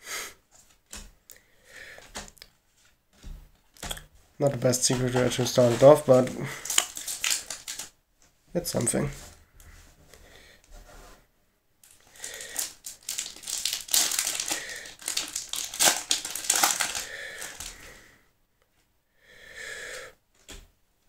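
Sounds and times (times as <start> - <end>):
foil wrapper crinkling and tearing: 4.6 - 7.9, 11.8 - 17.9.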